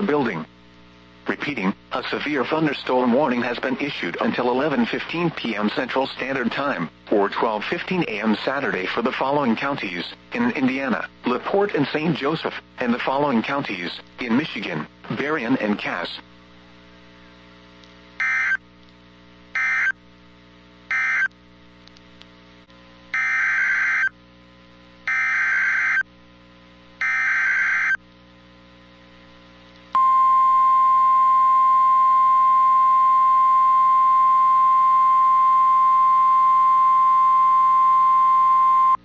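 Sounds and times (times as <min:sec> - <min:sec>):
steady warning alarm tone: 0:18.2 - 0:18.6, 0:19.6 - 0:20.0, 0:20.9 - 0:21.3, 0:23.2 - 0:24.1, 0:25.1 - 0:26.0, 0:27.0 - 0:28.0.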